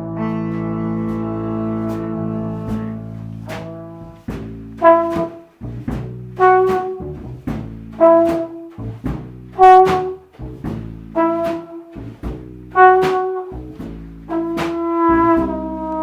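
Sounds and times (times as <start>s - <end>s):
low sustained bass line: 0.0s - 4.9s
trombone phrases: 0.0s - 16.0s.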